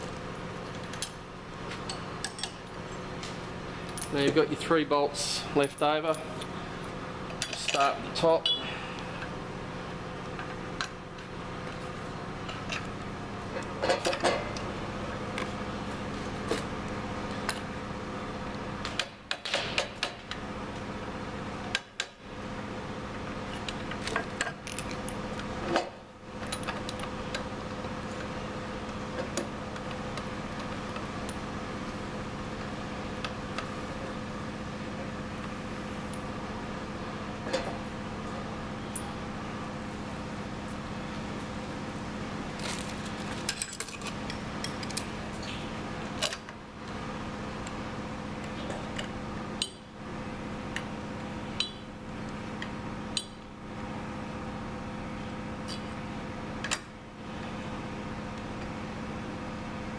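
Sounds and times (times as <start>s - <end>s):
steady machine hum: 0.0s - 59.9s
metallic clinks of tools and bolts: 43.4s - 45.1s.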